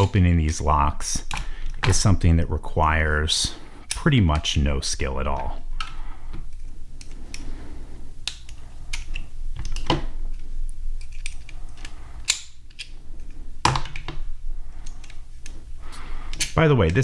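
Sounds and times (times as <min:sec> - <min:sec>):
steady low hum: 0:00.0 - 0:17.0
padlocks clicking open: 0:08.2 - 0:15.6, 0:16.2 - 0:17.0.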